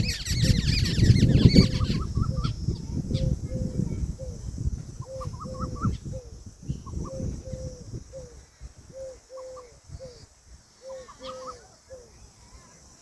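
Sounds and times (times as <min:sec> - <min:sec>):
peahen calling: 0:00.0 - 0:04.4, 0:05.0 - 0:12.6.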